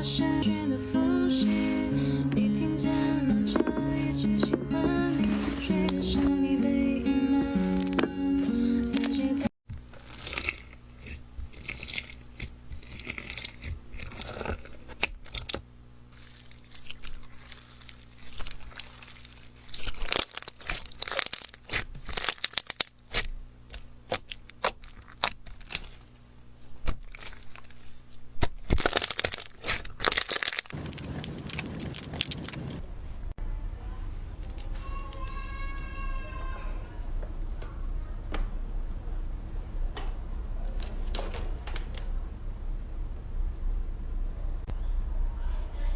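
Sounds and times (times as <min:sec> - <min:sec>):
slime crackling and popping: 0:09.8 - 0:32.8.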